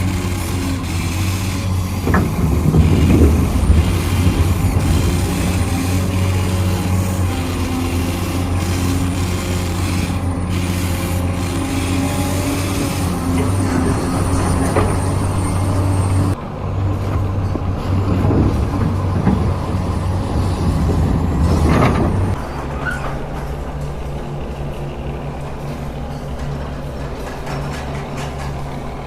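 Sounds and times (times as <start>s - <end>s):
model machine motor and gear whine: 0.0s - 16.4s.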